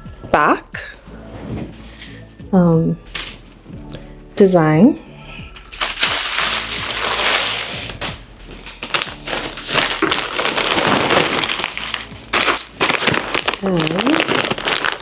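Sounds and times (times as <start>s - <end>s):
plastic packaging crinkling: 5.6s - 15.0s.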